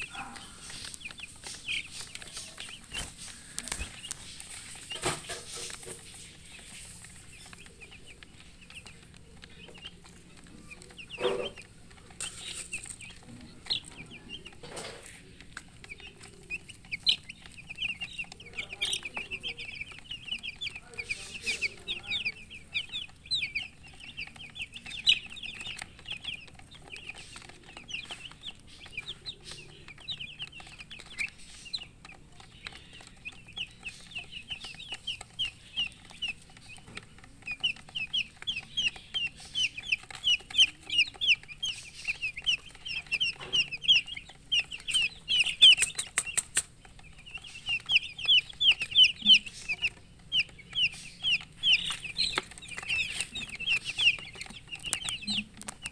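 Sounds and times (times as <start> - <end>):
baby chicks peeping: 0.0 - 55.9
sharp clicks or rustles: 22.4 - 55.9.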